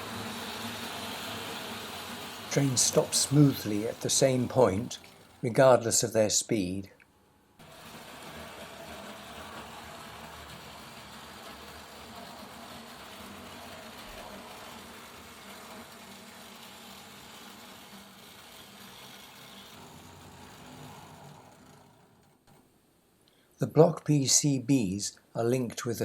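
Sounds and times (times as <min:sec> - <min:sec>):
model train motor whirring: 0:00.0 - 0:06.2, 0:07.6 - 0:22.7.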